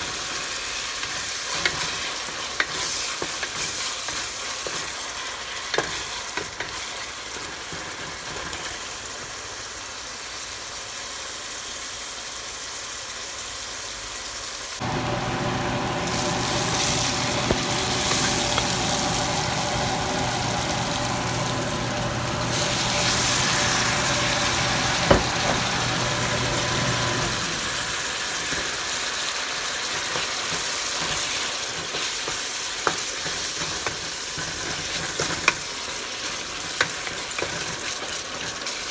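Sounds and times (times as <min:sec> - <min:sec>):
food sizzling in a pan: 0:00.0 - 0:38.9
motor-like hum: 0:14.8 - 0:28.8
knocks in a pan: 0:25.0 - 0:25.7.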